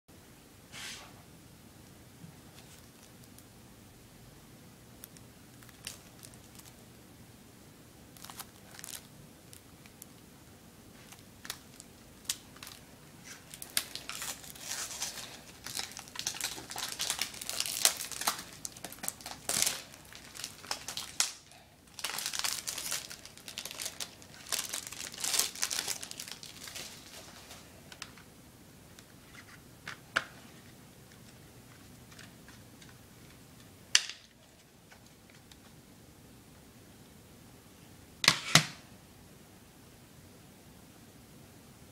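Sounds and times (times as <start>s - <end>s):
plastic wrap crinkling and tearing: 2.5s - 3.4s, 5.0s - 6.8s, 8.2s - 10.2s, 11.0s - 28.2s.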